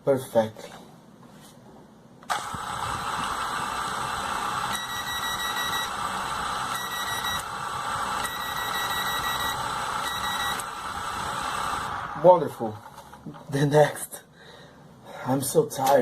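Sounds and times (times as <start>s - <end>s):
drone motors whirring: 2.4s - 12.2s.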